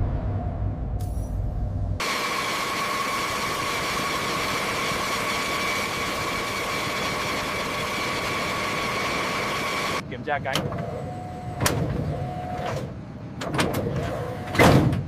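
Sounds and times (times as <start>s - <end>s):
low rumble: 0.0s - 2.0s
jet engines hissing and whining: 2.0s - 13.3s.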